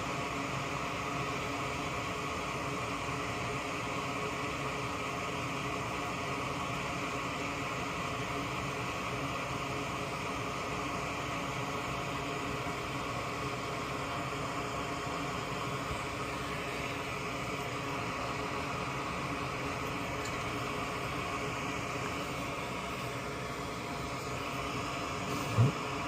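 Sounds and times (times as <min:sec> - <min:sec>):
vent fan whooshing hum: 0:00.0 - 0:26.0.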